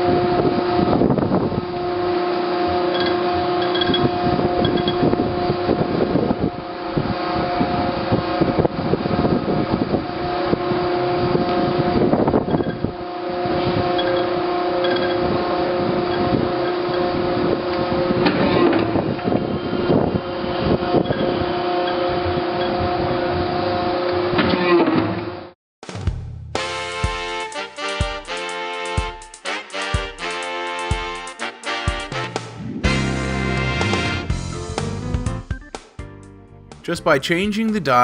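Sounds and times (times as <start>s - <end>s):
hydraulic press humming: 0.1s - 25.3s.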